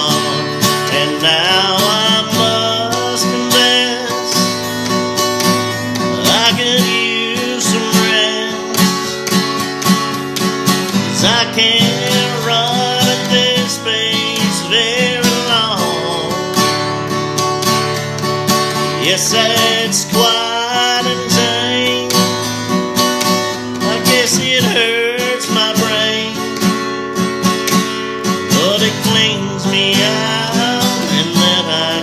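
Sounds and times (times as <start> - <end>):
acoustic guitar strumming: 0.0 - 32.0
bending lead guitar melody: 0.0 - 32.0.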